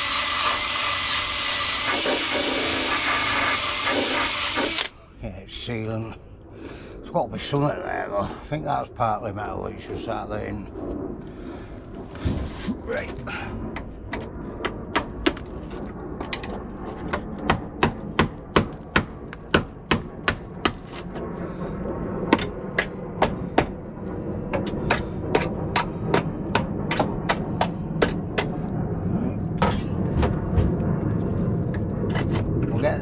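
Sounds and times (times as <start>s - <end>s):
hammer striking metal bodywork: 24.5s - 28.6s.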